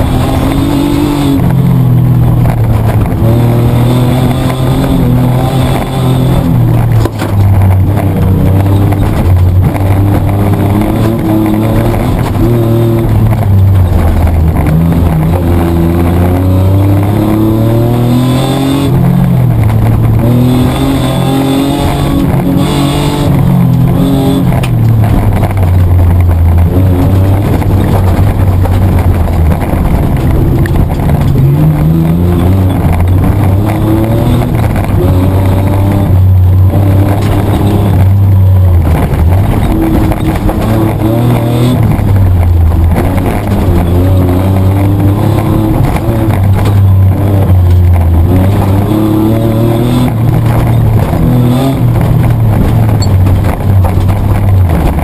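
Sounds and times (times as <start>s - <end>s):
car engine revving: 0.0s - 55.0s
road and chassis noise: 0.0s - 55.0s.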